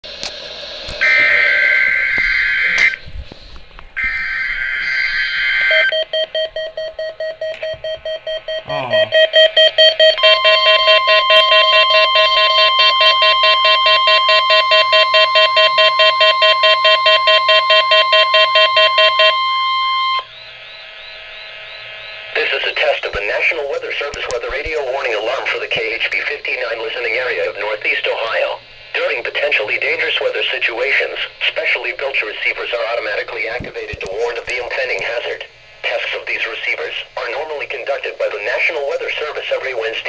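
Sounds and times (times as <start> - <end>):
steady warning alarm tone: 1.0 - 3.0, 4.0 - 33.3
rapid electronic beeping: 4.0 - 33.3
digital data burst: 20.2 - 24.1.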